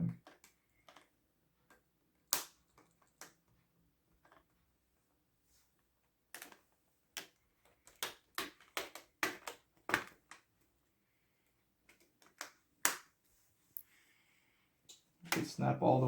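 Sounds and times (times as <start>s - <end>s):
plastic clips snapping: 1.7s - 3.4s, 7.2s - 10.5s, 11.8s - 13.1s.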